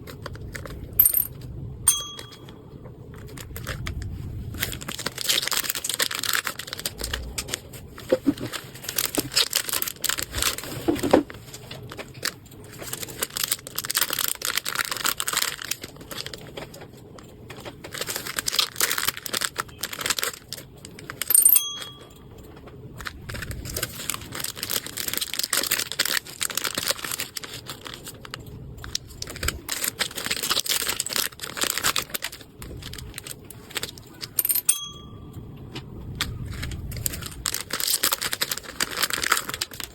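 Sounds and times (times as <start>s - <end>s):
packaging crinkling and rustling: 0.0s - 1.6s, 2.3s - 34.4s, 35.7s - 39.9s.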